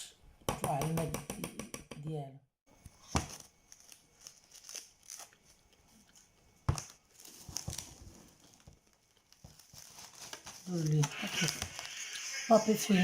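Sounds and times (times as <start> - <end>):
cling film pulled and crinkled: 3.3 - 13.0.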